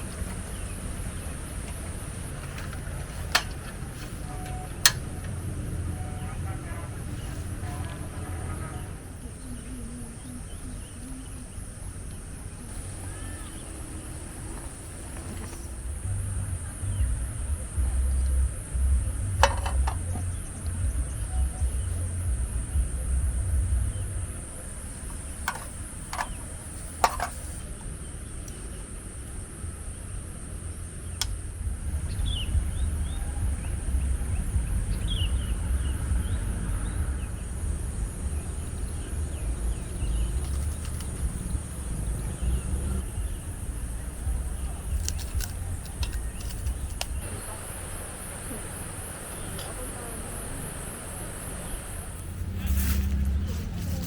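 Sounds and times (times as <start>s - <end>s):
sharp clicks: 0.0s - 5.7s, 44.2s - 47.3s
insects droning: 0.0s - 54.0s
wind buffeting microphone: 12.6s - 54.0s.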